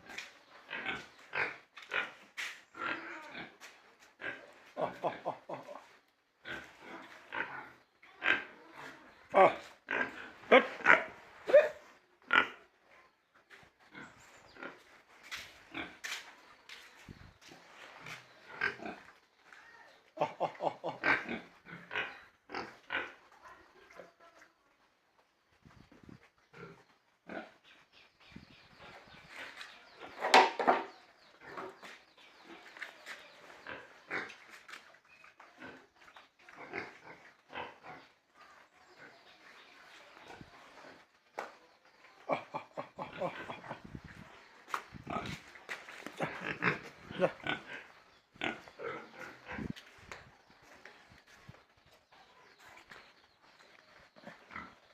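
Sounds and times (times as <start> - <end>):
pigs grunting: 0.0 - 12.8, 13.5 - 16.2, 17.6 - 19.5, 20.2 - 24.0, 26.5 - 27.8, 28.8 - 41.1, 42.2 - 50.0, 54.0 - 54.9.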